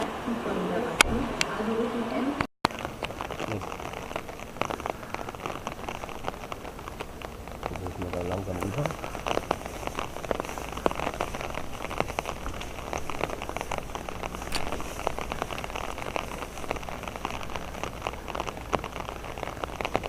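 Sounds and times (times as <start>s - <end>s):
steady rain: 0.0s - 20.0s.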